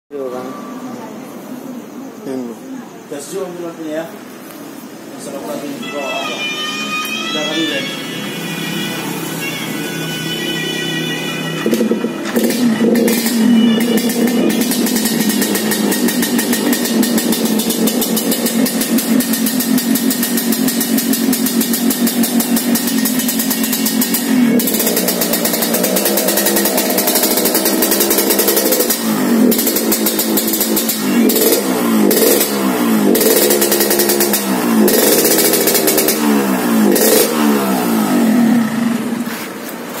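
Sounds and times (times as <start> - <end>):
motorcycle engine revving: 10.6 - 40.0.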